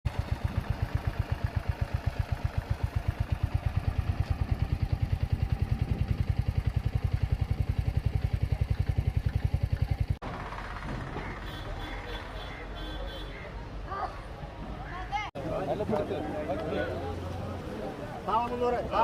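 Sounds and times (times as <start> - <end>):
engine idling with low thumping: 0.1 - 13.2.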